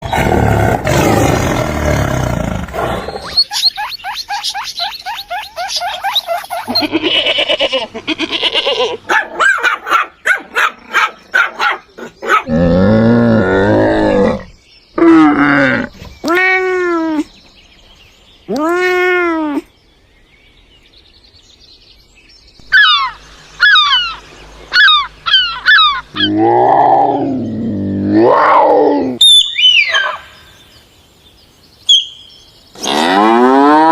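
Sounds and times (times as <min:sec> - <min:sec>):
animal roaring: 0:00.0 - 0:03.3, 0:12.5 - 0:16.0, 0:24.8 - 0:29.2, 0:32.8 - 0:33.9
rapid pulsing animal calls: 0:03.0 - 0:07.6, 0:22.6 - 0:26.5
rising and falling animal cries: 0:03.0 - 0:09.0, 0:22.6 - 0:30.3
low wavering animal call: 0:22.6 - 0:30.2.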